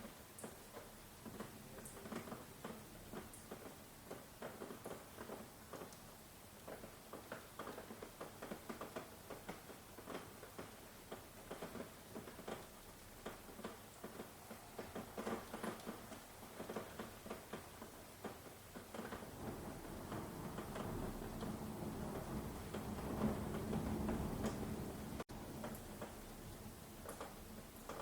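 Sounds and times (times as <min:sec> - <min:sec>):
rain drops pattering: 0:00.0 - 0:28.0
low rumble: 0:19.4 - 0:25.2.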